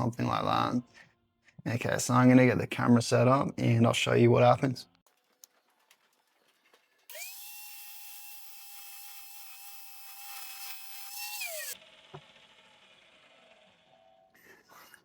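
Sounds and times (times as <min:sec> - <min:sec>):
high-speed grinder whining: 0:07.1 - 0:14.4.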